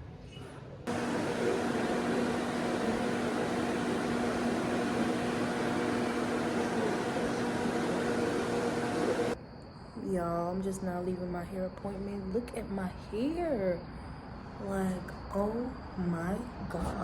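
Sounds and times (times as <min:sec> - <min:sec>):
hair dryer running: 0:00.9 - 0:09.4.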